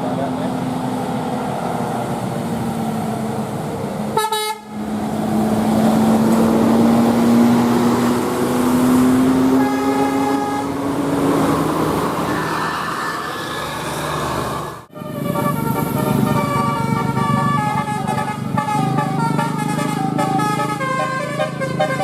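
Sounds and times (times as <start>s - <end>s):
bus engine drone: 0.0s - 22.0s
bus musical horn: 4.1s - 4.9s, 8.8s - 11.2s, 14.4s - 22.0s.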